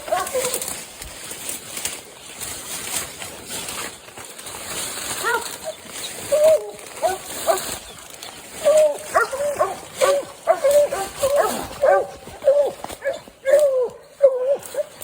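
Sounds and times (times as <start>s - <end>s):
dog barking: 0.0s - 0.6s, 5.2s - 5.6s, 7.0s - 7.7s, 9.1s - 15.0s.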